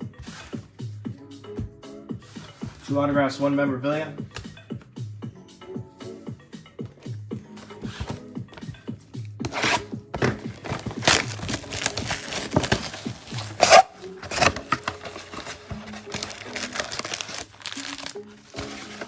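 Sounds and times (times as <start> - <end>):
background music: 0.0 - 19.0
plastic wrap and cardboard rustling: 7.5 - 8.8, 9.4 - 19.0.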